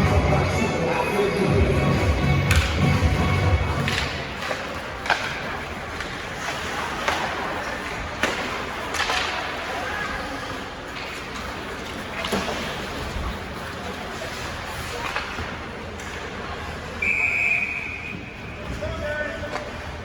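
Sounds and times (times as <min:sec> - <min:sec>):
murmur of spectators: 0:00.0 - 0:20.0
hockey sticks and puck clacking: 0:01.9 - 0:17.2, 0:19.4 - 0:20.0.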